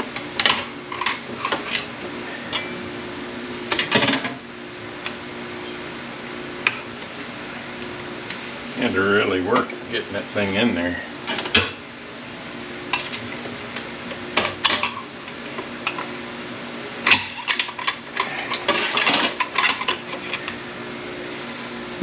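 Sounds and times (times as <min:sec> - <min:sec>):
steady low hum: 0:00.0 - 0:22.0
metal parts clinking and rattling: 0:17.1 - 0:20.5.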